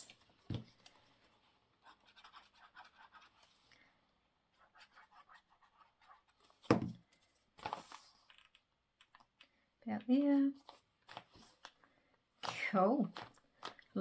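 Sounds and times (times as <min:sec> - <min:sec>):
paper rustling and scratching: 0:04.6 - 0:09.2, 0:10.5 - 0:11.8, 0:12.4 - 0:14.0.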